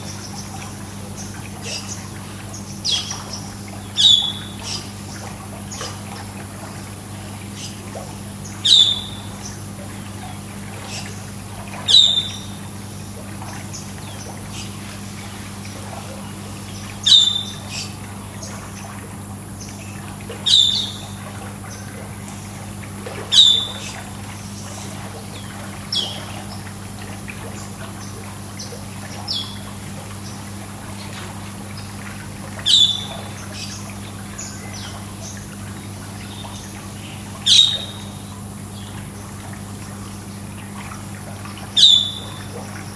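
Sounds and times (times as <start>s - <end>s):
pool water trickling: 0.0s - 42.9s
faint bird chirps: 2.8s - 4.9s, 8.6s - 9.3s, 11.9s - 12.6s, 16.7s - 18.0s, 20.4s - 21.8s, 23.3s - 24.0s, 32.6s - 33.8s, 36.2s - 38.9s, 41.8s - 42.5s.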